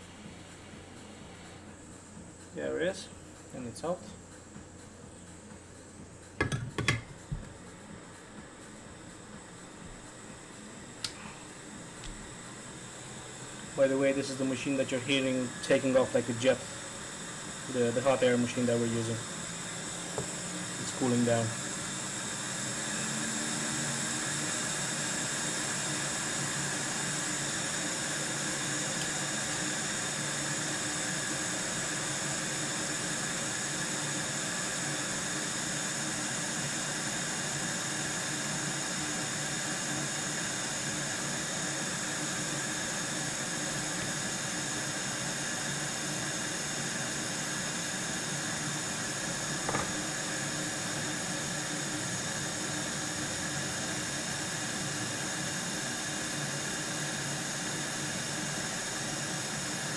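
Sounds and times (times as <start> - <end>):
hot air station blowing: 0.0 - 59.9
click: 11.0 - 11.2.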